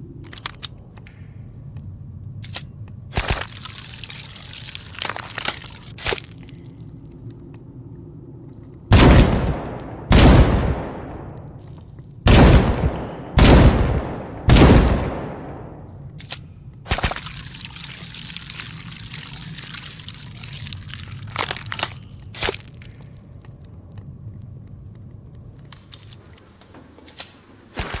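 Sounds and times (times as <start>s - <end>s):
steady hiss and low hum: 0.0s - 28.0s
rifle shot: 8.9s - 11.3s, 12.3s - 15.8s.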